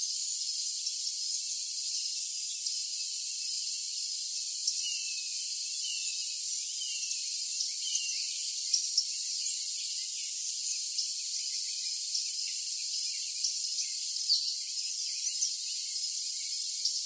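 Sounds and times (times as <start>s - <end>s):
crickets trilling: 0.0s - 17.0s
songbird chirps: 4.6s - 6.2s, 6.8s - 11.2s, 11.8s - 17.0s.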